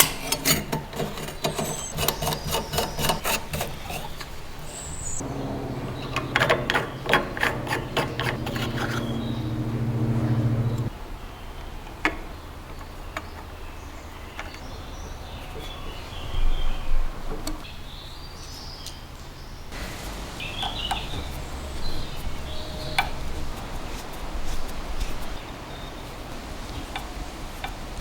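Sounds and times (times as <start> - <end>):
bird calls: 0.0 - 10.9.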